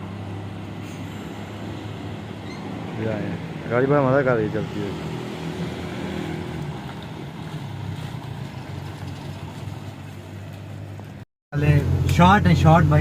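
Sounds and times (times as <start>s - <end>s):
car engine humming: 0.0s - 13.0s
road noise: 0.0s - 13.0s.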